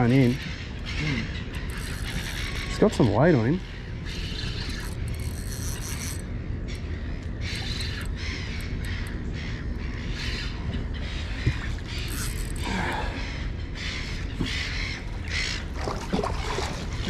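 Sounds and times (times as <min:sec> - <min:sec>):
steady low rumble: 0:00.0 - 0:17.0
fishing reel winding: 0:01.6 - 0:02.7, 0:04.5 - 0:06.3, 0:12.0 - 0:12.6.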